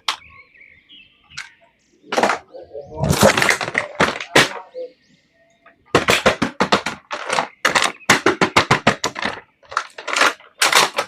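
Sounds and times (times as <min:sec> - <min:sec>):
sharp clicks and crackles: 0:01.3 - 0:04.8, 0:05.6 - 0:11.0.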